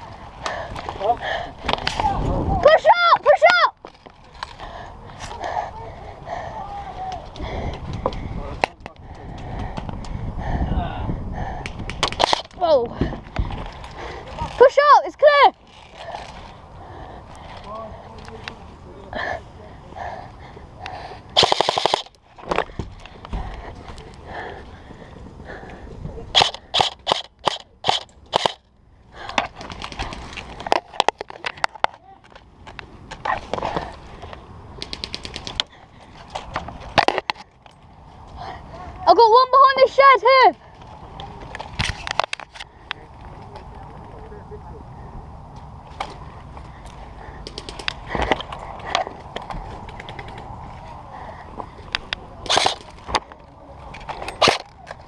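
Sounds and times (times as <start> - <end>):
airsoft gun shots: 21.4 - 22.1, 26.3 - 28.6.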